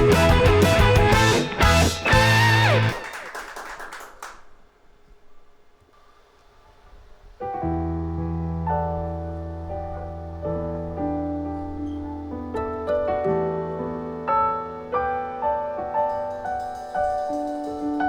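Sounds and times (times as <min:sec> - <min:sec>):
live band final hits: 0:00.0 - 0:04.0
slow piano chords: 0:07.4 - 0:18.0.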